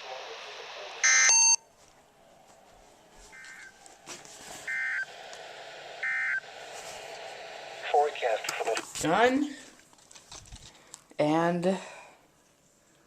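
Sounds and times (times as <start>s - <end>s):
buzzy electronic data bursts: 4.7s - 6.6s.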